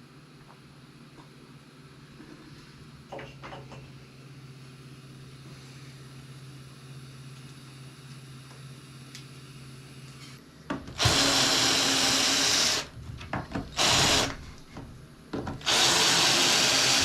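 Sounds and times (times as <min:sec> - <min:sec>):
power drill running: 0:11.0 - 0:12.9, 0:13.7 - 0:14.4, 0:15.6 - 0:17.0.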